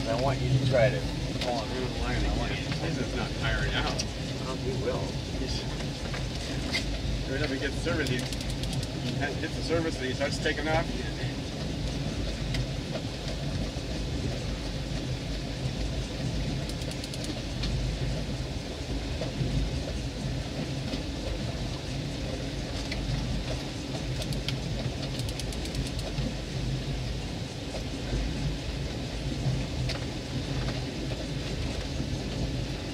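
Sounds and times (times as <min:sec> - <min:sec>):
boat motor running: 0:00.0 - 0:32.9
water noise: 0:00.0 - 0:32.9
wind buffeting: 0:00.0 - 0:32.9
rapid clicks: 0:05.8 - 0:11.2, 0:16.5 - 0:17.8, 0:22.8 - 0:26.3.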